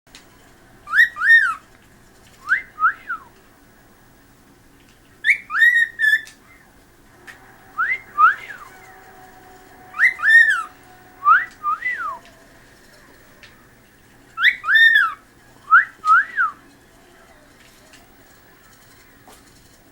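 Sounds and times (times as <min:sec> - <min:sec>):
cockatiel whistling: 0:00.8 - 0:01.6, 0:02.4 - 0:03.3, 0:05.2 - 0:06.6, 0:07.6 - 0:13.7, 0:14.4 - 0:16.7.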